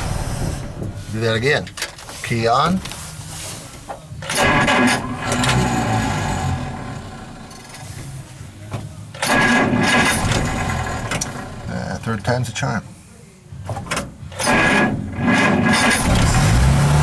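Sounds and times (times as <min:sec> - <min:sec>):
engine starting and running: 0:00.0 - 0:03.6, 0:04.2 - 0:08.4, 0:09.2 - 0:12.1, 0:13.9 - 0:17.0.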